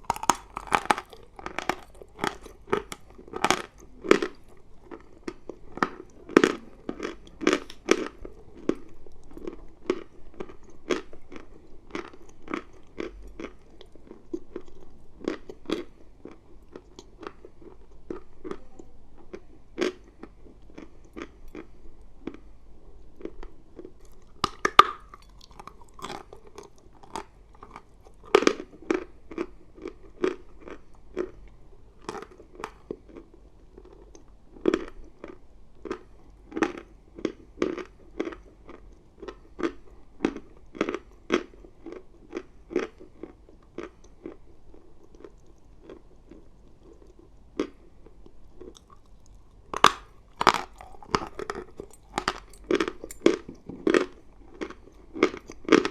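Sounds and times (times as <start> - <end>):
person crunching chalk: 0.0 - 8.8.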